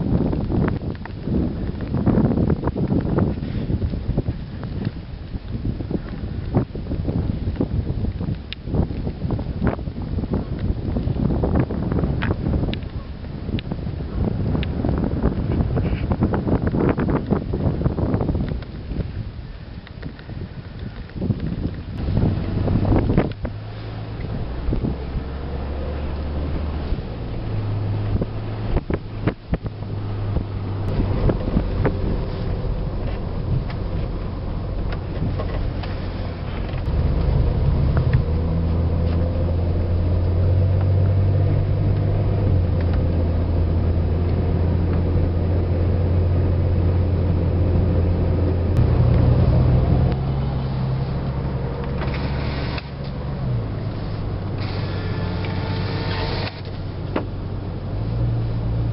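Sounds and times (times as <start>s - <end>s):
car engine hum: 0.0s - 58.9s.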